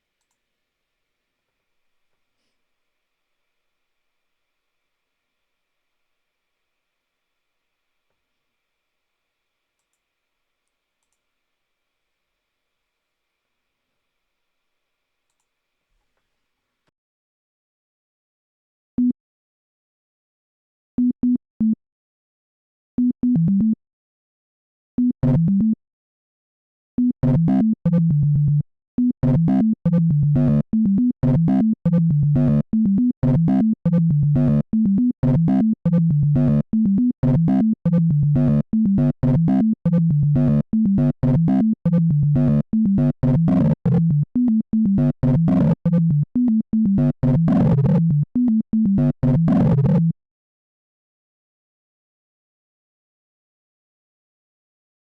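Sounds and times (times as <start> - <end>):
low electronic synthesizer notes: 30.4 - 30.6, 32.4 - 32.6, 34.4 - 34.6, 36.4 - 36.6, 37.3 - 50.1.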